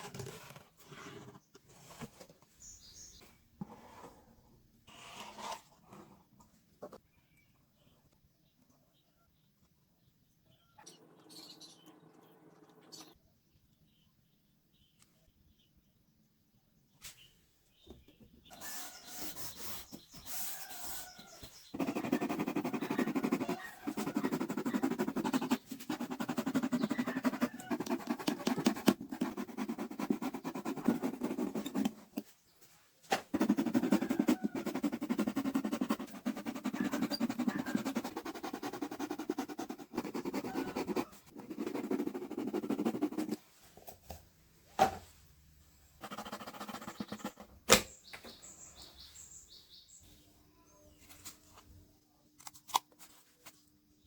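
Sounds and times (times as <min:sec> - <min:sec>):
rasping on cardboard: 0:18.6 - 0:32.0, 0:33.3 - 0:43.4, 0:46.0 - 0:47.5.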